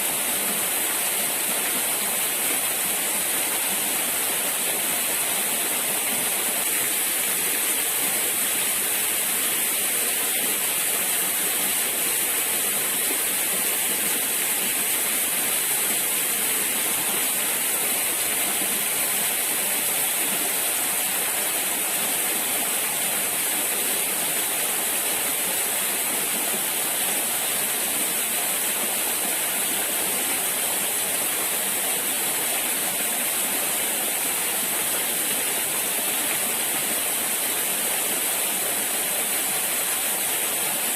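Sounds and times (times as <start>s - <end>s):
water rushing over rocks: 0.0s - 40.9s.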